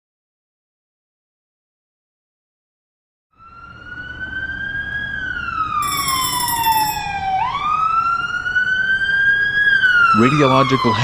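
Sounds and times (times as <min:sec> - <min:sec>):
siren wailing: 0:07.0 - 0:11.0.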